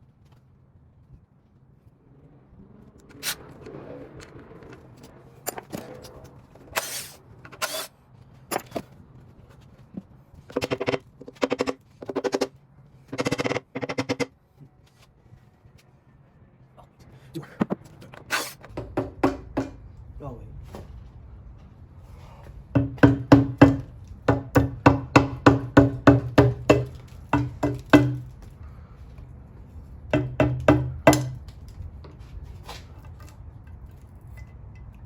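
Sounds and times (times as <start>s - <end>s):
tools knocking on metal: 18.7s - 19.8s, 22.8s - 28.2s, 30.2s - 31.4s.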